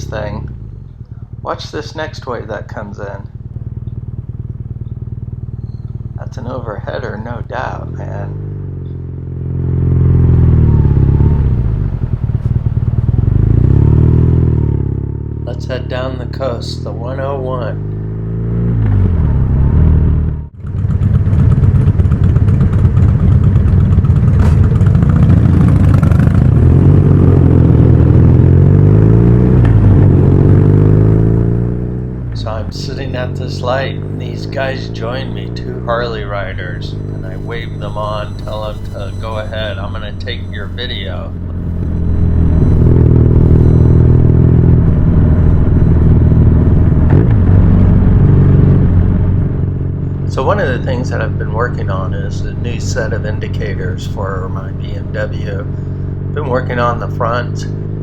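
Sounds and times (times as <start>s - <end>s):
motorcycle engine running: 0.0s - 58.0s
short rising sound: 24.4s - 50.2s.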